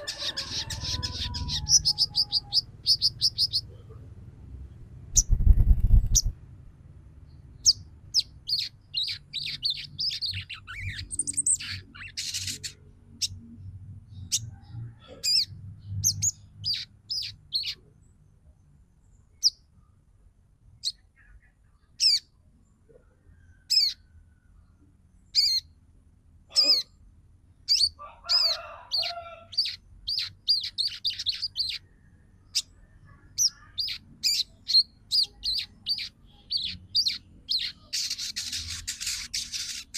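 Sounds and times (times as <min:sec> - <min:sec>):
bird chirping chatter: 0:00.0 - 0:06.4, 0:07.3 - 0:19.8, 0:20.8 - 0:25.8, 0:26.5 - 0:39.9.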